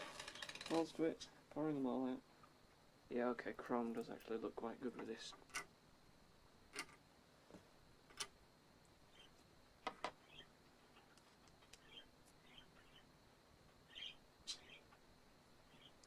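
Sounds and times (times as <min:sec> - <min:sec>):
budgerigars chirping: 0:13.9 - 0:14.8.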